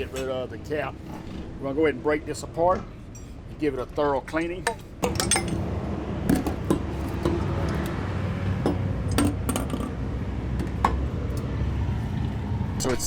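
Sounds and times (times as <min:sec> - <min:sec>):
low steady hum: 0:00.0 - 0:13.0
metal parts clinking: 0:04.6 - 0:05.7, 0:08.6 - 0:09.9.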